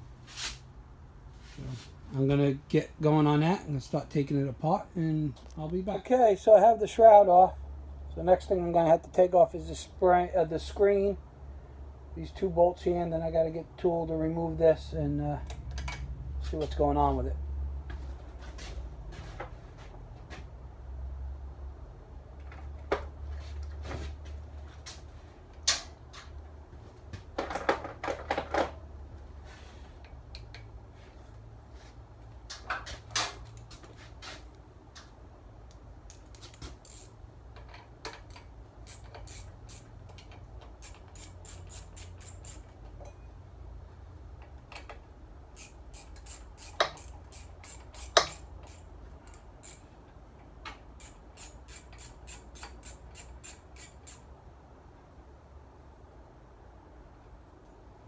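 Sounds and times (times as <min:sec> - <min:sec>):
socket ratchet clicking: 0:36.8 - 0:37.2, 0:38.1 - 0:42.8, 0:45.6 - 0:49.9, 0:50.7 - 0:54.3
metal tools clinking on engine: 0:45.6 - 0:49.8.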